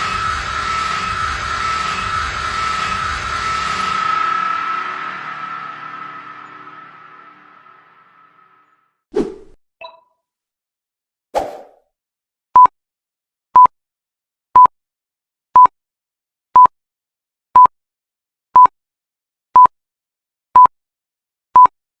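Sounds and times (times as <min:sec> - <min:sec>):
noisy sound effect hit: 0:00.0 - 0:08.7.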